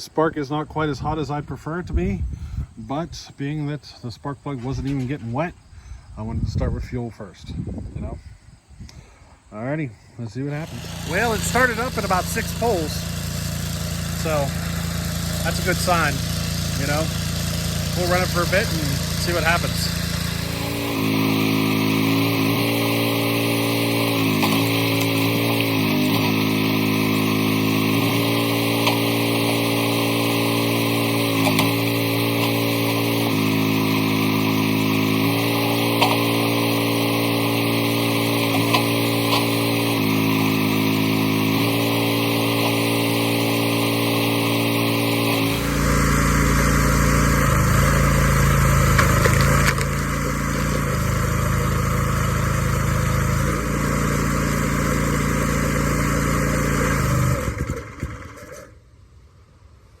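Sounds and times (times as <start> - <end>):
small gas engine running: 10.5 - 58.9.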